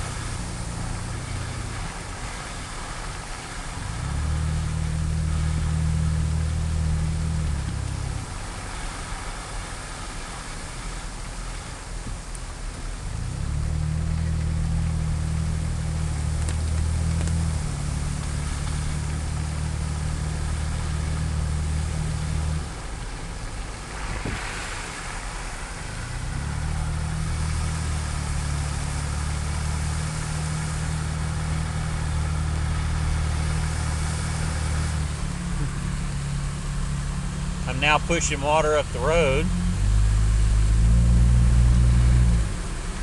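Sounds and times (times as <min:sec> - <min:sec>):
car engine running: 0:00.0 - 0:43.0
brief hiss: 0:23.9 - 0:26.6.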